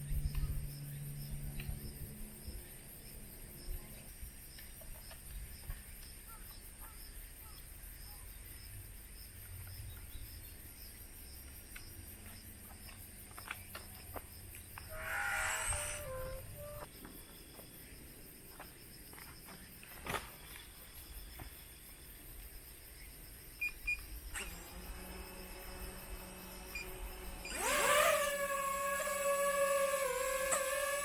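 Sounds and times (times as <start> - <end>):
insects trilling: 0.0 - 31.0
pulsing call: 14.9 - 16.9.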